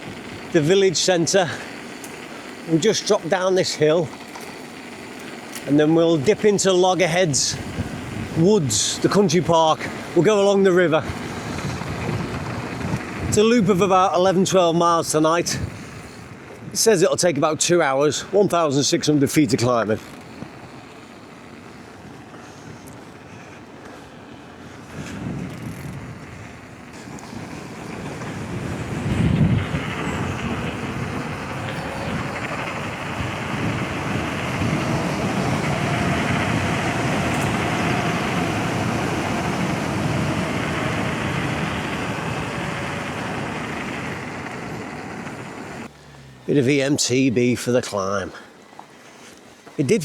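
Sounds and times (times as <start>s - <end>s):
bike tyre noise: 0.0s - 50.0s
wind rushing over microphone: 5.7s - 18.1s, 24.7s - 45.9s.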